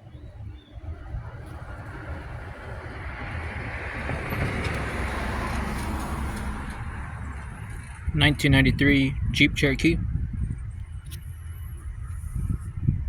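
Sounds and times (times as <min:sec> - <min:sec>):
road vehicle passing: 0:00.8 - 0:08.8.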